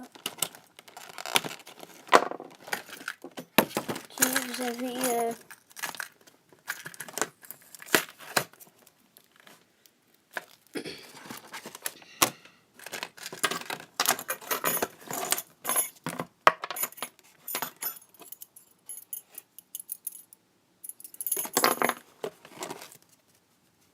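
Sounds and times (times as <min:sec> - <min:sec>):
packaging rustling: 0:00.0 - 0:09.7, 0:10.3 - 0:12.0, 0:22.0 - 0:23.1
metallic clinking and jangling: 0:04.1 - 0:06.1, 0:13.4 - 0:16.0, 0:16.6 - 0:22.1.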